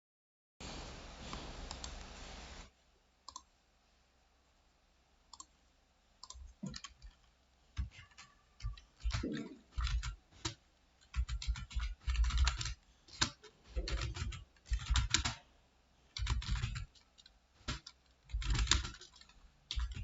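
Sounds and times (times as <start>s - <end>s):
steady hiss: 0.6s - 3.2s
keyboard typing: 3.3s - 3.5s, 6.2s - 15.4s, 16.1s - 20.0s.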